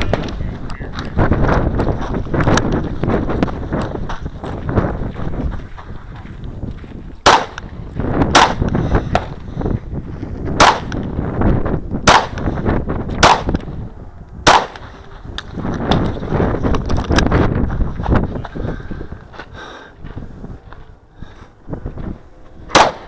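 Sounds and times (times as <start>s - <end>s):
pistol shots: 7.2s - 7.6s, 8.3s - 8.7s, 10.6s - 11.0s, 12.0s - 12.5s, 13.2s - 13.7s, 14.4s - 14.8s, 22.7s - 23.0s.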